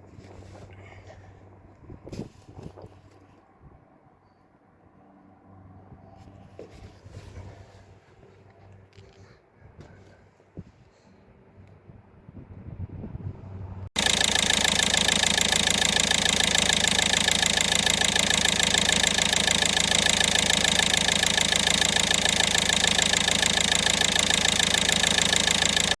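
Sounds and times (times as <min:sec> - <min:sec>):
diesel engine idling: 0:13.6 - 0:26.0.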